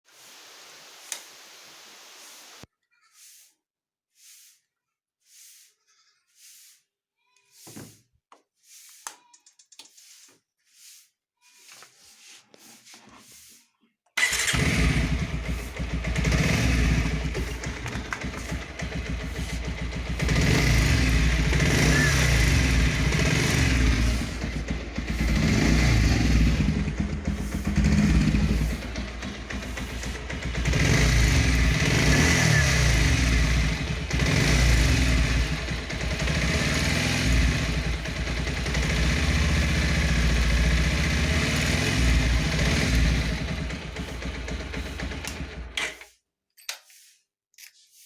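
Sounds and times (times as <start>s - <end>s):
motorcycle engine revving: 14.2s - 45.8s.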